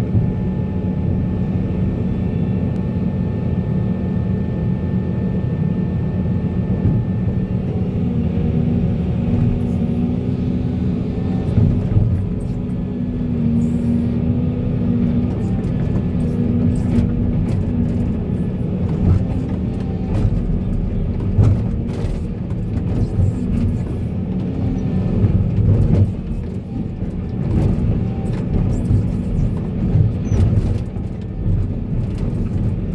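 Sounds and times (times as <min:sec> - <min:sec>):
excavator diesel engine: 0:06.8 - 0:32.9
knocks and clatter: 0:15.1 - 0:32.9.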